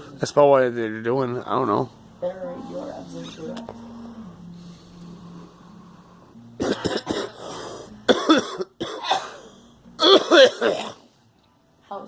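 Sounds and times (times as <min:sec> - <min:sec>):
person coughing hard: 0:06.6 - 0:07.4, 0:08.1 - 0:11.1.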